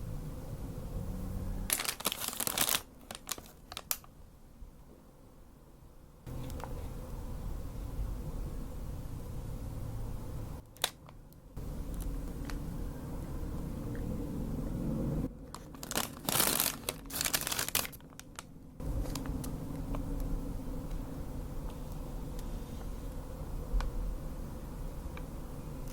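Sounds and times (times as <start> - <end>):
low room hum: 0.0 - 25.9
paper packaging crinkling: 1.7 - 4.1, 15.4 - 20.0.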